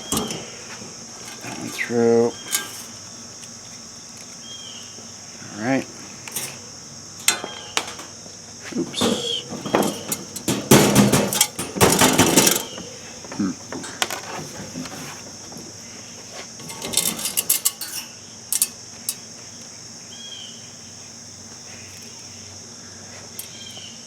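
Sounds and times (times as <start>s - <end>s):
small metal parts clattering: 0.0s - 3.1s, 6.2s - 8.3s, 8.9s - 15.2s, 16.6s - 19.2s.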